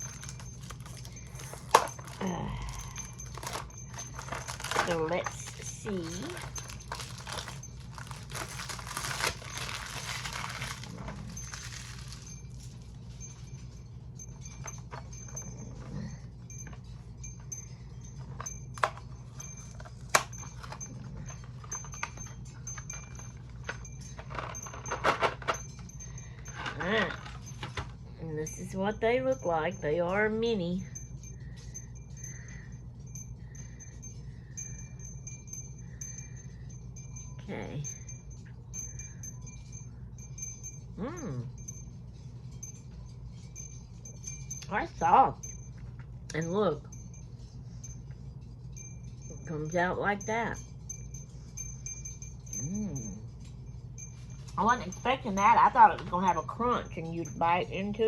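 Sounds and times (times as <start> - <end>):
snack package crinkling: 0.0 - 12.3
rattling: 0.0 - 28.1
light chime ringing: 0.0 - 58.0
steady low hum: 0.0 - 58.0
person humming while chewing: 52.5 - 53.5.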